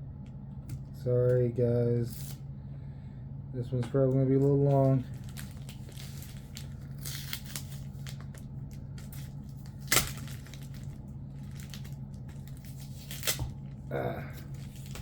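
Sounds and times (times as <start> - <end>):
plastic bag crinkling: 4.4 - 15.0.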